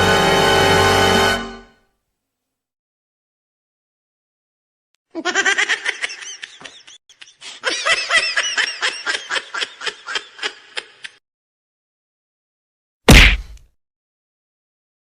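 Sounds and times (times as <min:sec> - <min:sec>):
high-pitched laughter: 0:05.1 - 0:11.2.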